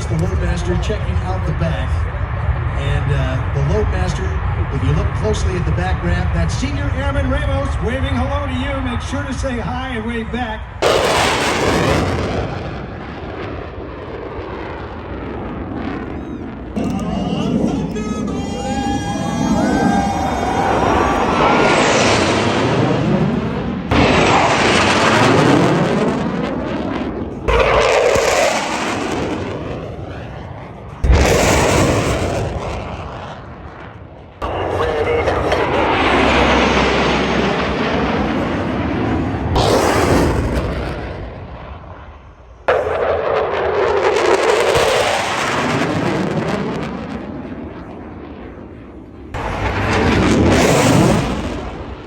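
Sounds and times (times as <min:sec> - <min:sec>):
aircraft noise: 0:00.0 - 0:52.0
airplane engine roar passing: 0:00.0 - 0:52.0
loud booms: 0:10.4 - 0:48.2, 0:49.0 - 0:52.0.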